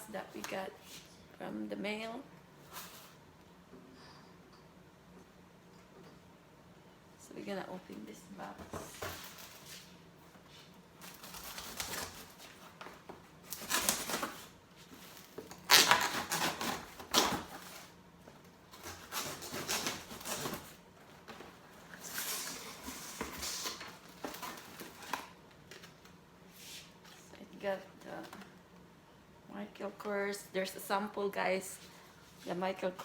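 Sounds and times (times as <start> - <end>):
cardboard box tearing and rustling: 13.5 - 17.9.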